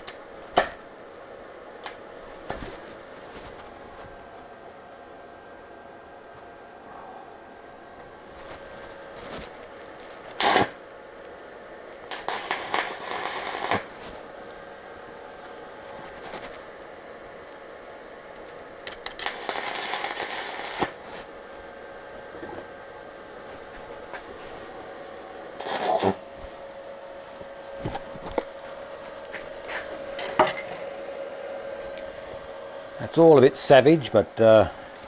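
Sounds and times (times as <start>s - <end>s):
welding arc sizzling and crackling: 0.0s - 4.4s, 8.0s - 31.0s
faint steady hum: 0.0s - 35.0s.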